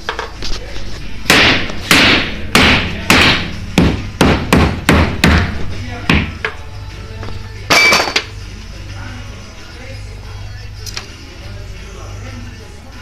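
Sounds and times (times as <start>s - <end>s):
hammer striking wood: 1.3s - 6.6s.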